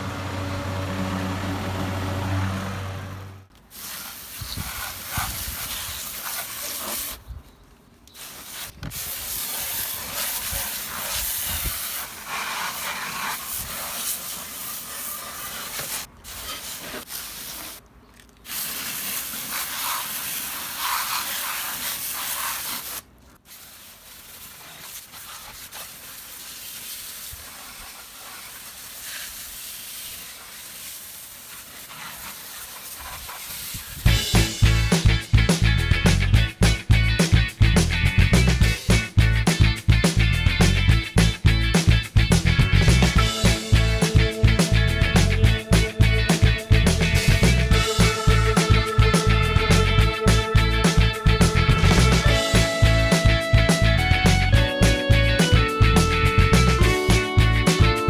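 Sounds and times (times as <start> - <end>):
lawn mower cutting grass: 0.0 - 3.6, 42.9 - 55.8.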